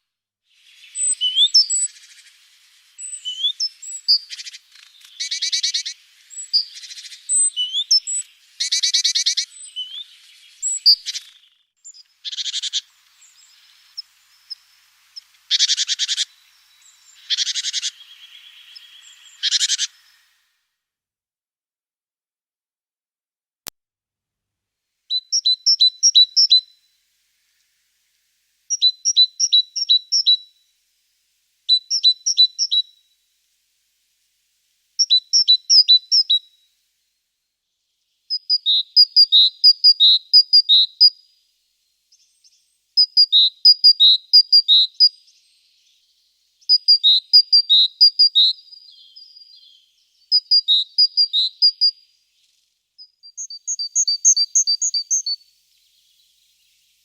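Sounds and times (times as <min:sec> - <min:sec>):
songbird singing: 0:00.0 - 0:20.5, 0:25.1 - 0:36.8, 0:37.6 - 0:57.0.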